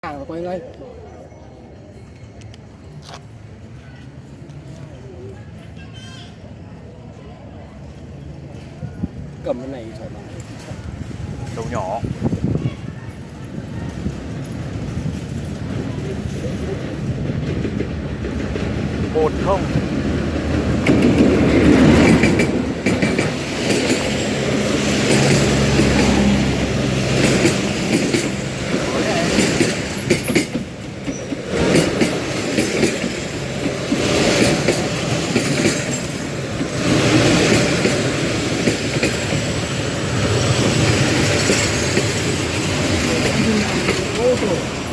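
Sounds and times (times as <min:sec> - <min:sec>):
locomotive engine rumble: 0:06.3 - 0:44.9
train wheels clacking on rail joints: 0:12.1 - 0:44.9.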